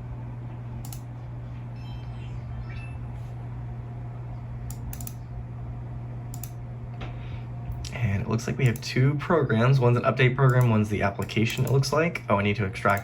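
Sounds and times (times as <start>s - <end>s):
low electrical hum: 0.0s - 13.0s
computer mouse clicks: 0.8s - 1.1s, 4.7s - 5.2s, 6.3s - 6.6s, 10.5s - 11.8s.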